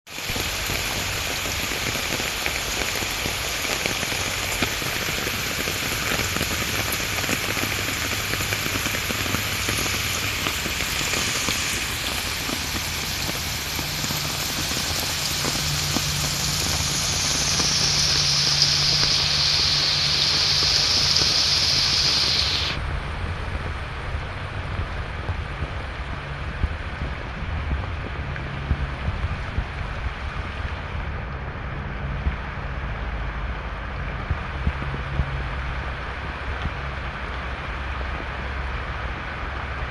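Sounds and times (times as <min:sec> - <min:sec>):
water rushing over rocks: 0:00.1 - 0:31.1.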